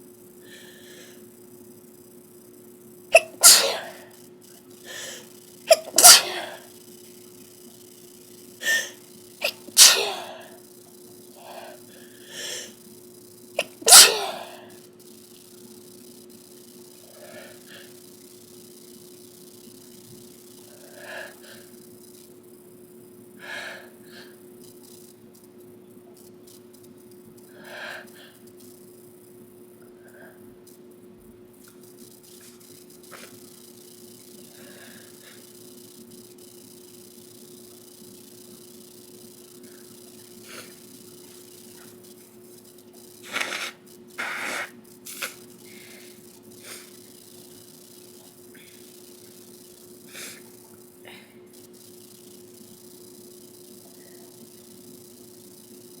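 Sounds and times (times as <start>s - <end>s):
steady low hum: 0.0s - 56.0s
stifled sneezes: 3.1s - 4.1s, 5.7s - 6.7s, 8.6s - 10.5s, 13.6s - 14.6s, 43.3s - 45.4s.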